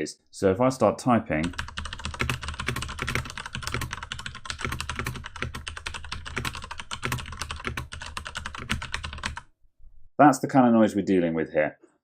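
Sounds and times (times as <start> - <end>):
fast typing on mechanical keyboard: 1.4 - 9.5.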